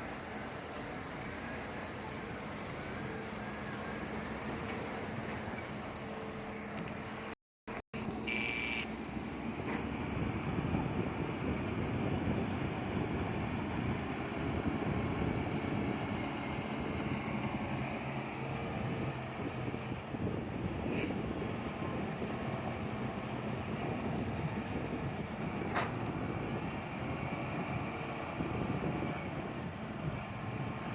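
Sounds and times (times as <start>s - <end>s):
diesel engine running: 0.0s - 30.9s
short high-pitched tone: 8.2s - 9.0s.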